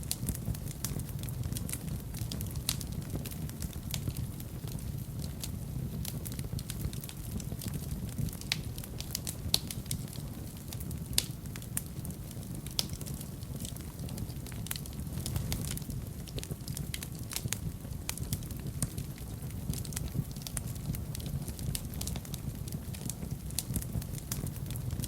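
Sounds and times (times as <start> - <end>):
fire crackling and popping: 0.0 - 25.0
low rumble of flames: 0.0 - 25.0.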